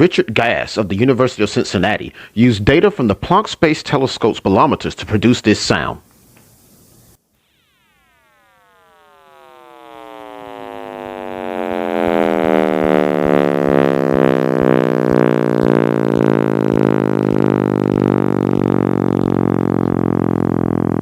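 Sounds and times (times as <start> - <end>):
deep synthesized drone gliding down: 7.4 - 21.0.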